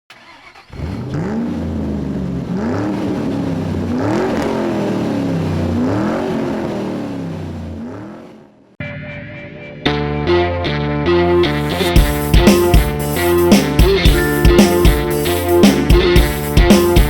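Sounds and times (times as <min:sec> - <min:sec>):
engine revving: 0:00.1 - 0:08.6.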